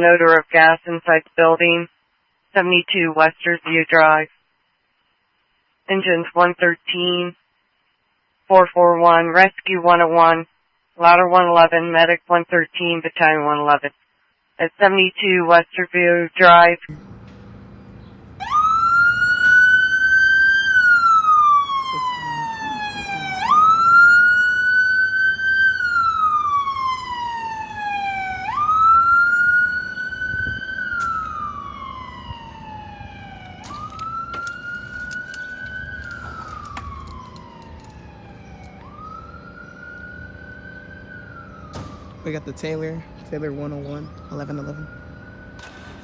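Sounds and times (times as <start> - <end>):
fire engine siren wailing: 17.1 - 46.0.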